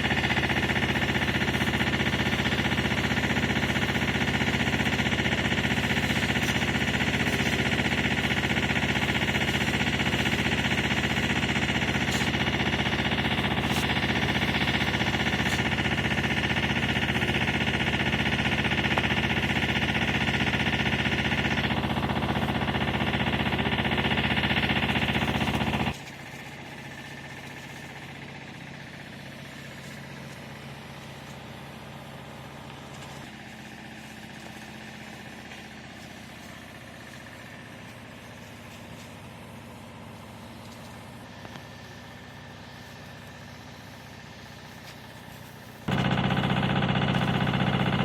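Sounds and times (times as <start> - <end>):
steady mechanical hum: 0.0 - 48.0.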